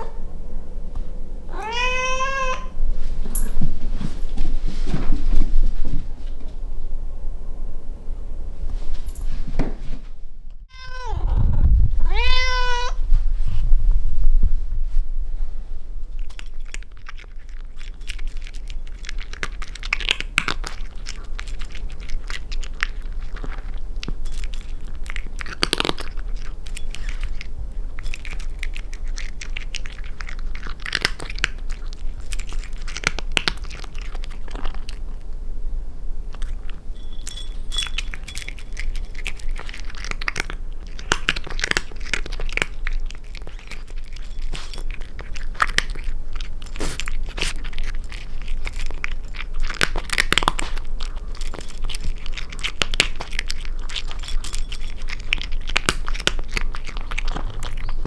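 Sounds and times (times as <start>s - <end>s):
steady low hum: 0.0s - 58.0s
kitten meowing: 1.5s - 2.8s, 10.7s - 11.4s, 12.0s - 13.0s.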